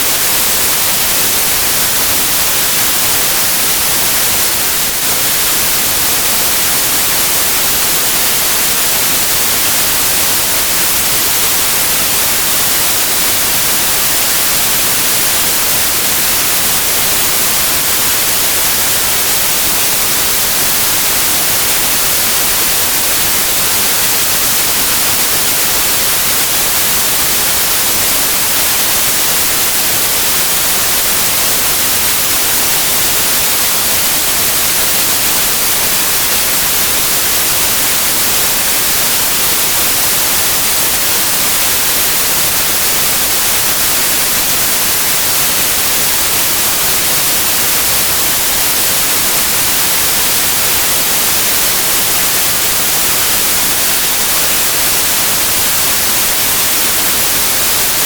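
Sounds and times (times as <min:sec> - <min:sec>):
steady white noise hiss: 0:00.0 - 0:58.0.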